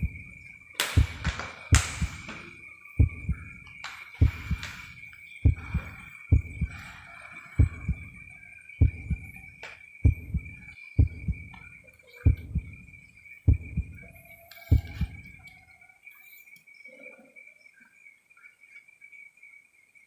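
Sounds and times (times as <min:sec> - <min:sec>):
heartbeat double thump: 0:00.0 - 0:00.3, 0:01.0 - 0:02.3, 0:03.0 - 0:03.6, 0:04.2 - 0:04.8, 0:05.4 - 0:06.8, 0:07.6 - 0:08.2, 0:08.8 - 0:09.4, 0:10.0 - 0:14.1, 0:14.7 - 0:15.3.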